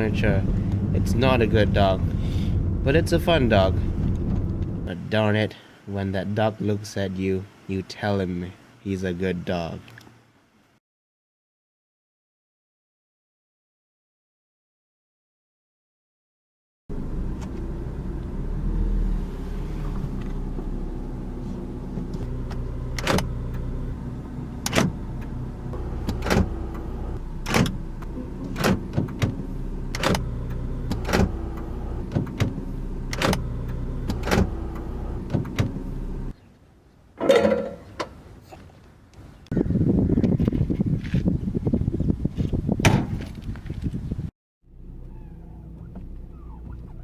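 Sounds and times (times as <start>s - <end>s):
car engine humming: 0.0s - 5.0s, 16.9s - 36.4s, 44.7s - 47.0s.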